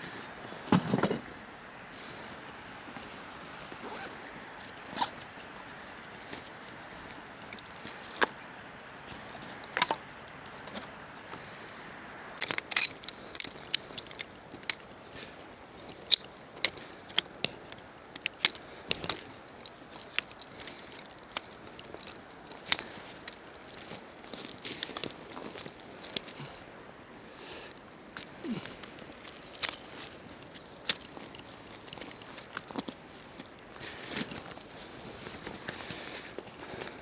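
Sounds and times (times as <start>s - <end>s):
camping gear clinking and rustling: 12.4s - 37.0s.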